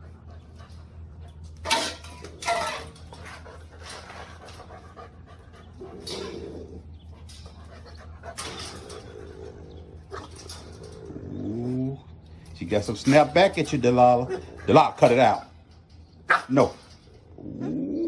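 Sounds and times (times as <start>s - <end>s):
dogs panting: 0.0s - 1.6s, 3.1s - 11.0s, 13.2s - 16.0s.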